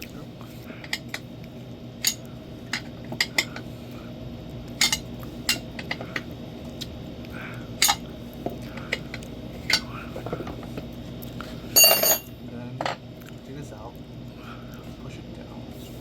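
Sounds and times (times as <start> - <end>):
steady low hum: 0.0 - 16.0
metal tools clinking: 11.8 - 12.3.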